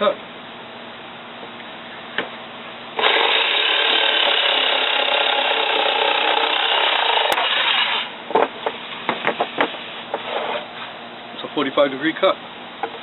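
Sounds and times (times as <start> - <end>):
electric jigsaw cutting wood: 3.0 - 8.1.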